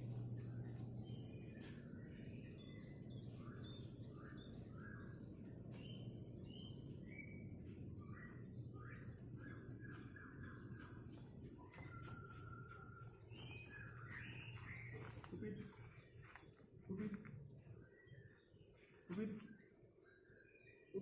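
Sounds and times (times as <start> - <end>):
steady low hum: 0.0 - 20.4
bird whistling and chirping: 2.7 - 15.3.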